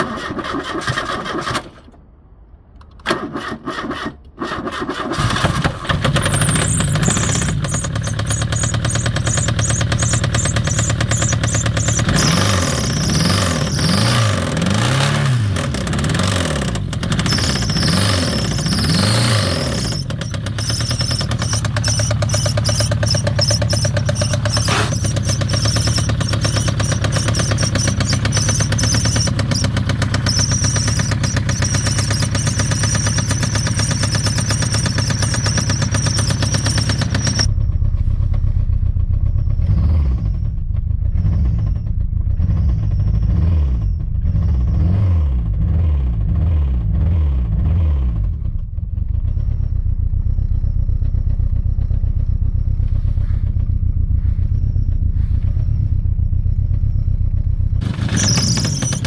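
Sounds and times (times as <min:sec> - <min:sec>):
engine knocking clatter: 0:05.1 - 0:37.5, 0:48.4 - 0:59.0
thin high squeal: 0:06.2 - 0:14.5, 0:17.1 - 0:37.5, 0:57.8 - 0:59.0.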